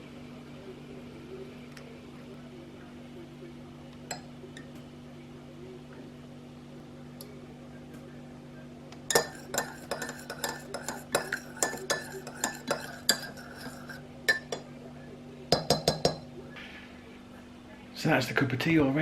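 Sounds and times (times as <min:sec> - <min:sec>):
faint low hum: 0:00.0 - 0:19.0
teaspoon clinking in a mug: 0:09.1 - 0:14.7, 0:15.5 - 0:16.2.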